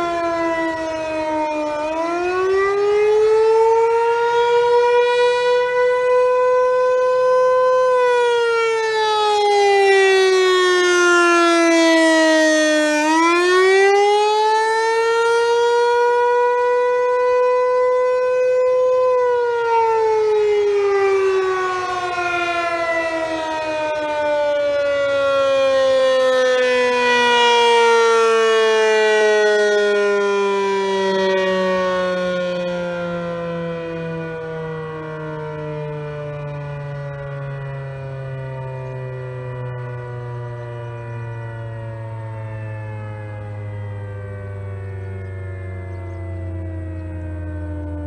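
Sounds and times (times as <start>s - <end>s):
rotating siren wailing: 0.0s - 48.0s.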